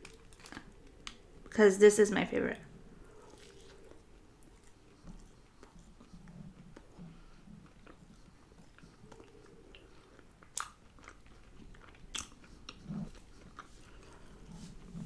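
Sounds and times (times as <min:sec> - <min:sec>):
person chewing food: 0:00.0 - 0:01.5, 0:02.8 - 0:15.0
sharp food crunches: 0:10.4 - 0:12.4.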